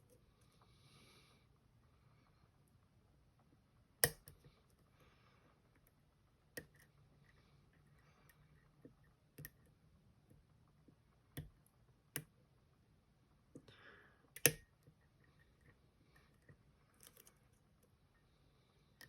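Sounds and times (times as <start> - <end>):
lock pick clicking: 4.0 - 4.4, 14.4 - 14.8, 17.0 - 17.4
faint scraping of lock pick: 5.8 - 9.8, 14.4 - 18.3.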